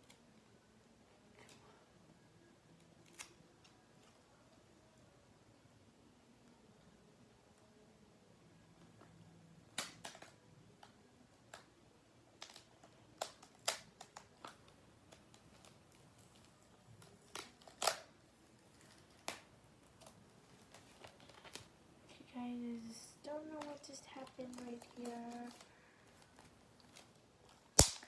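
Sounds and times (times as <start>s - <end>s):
paper crackling: 12.4s - 21.8s, 22.7s - 28.0s
sticky tape peeling: 17.0s - 18.2s, 27.7s - 28.0s.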